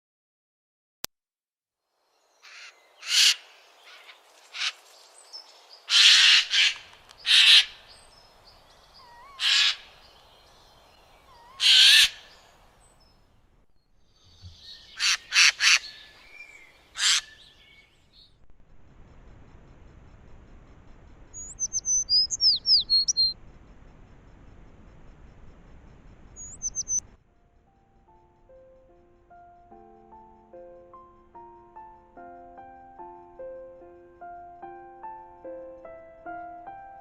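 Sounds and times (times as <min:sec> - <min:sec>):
harsh animal screeches: 0:05.9 - 0:07.8, 0:09.0 - 0:09.9, 0:11.4 - 0:12.3, 0:17.0 - 0:17.3
faint thin chirps: 0:26.4 - 0:27.1.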